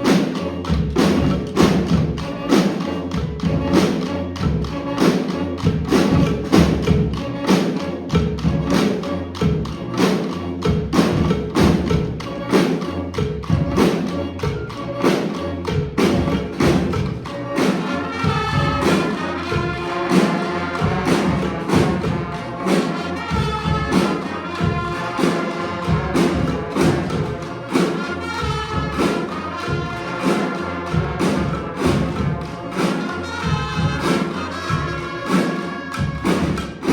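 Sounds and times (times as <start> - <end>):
steady drum beat: 0.0 - 36.9
horns playing melody: 16.3 - 36.9.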